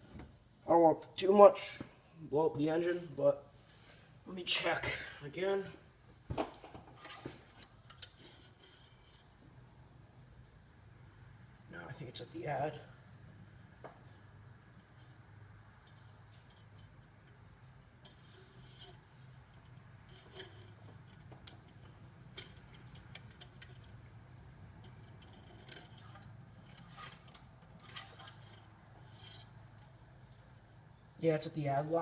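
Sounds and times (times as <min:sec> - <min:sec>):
low steady hum: 0:00.0 - 0:32.0
dipstick clicks and scrapes: 0:18.0 - 0:24.1.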